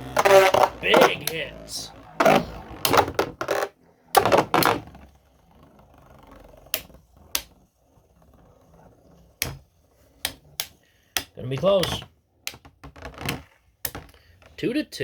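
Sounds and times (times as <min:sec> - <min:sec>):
spinning tops whirring: 0:00.0 - 0:12.0.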